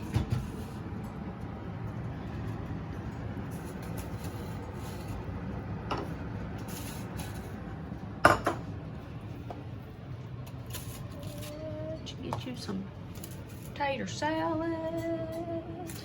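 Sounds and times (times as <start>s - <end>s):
dishes and utensils clattering: 8.2s - 8.8s.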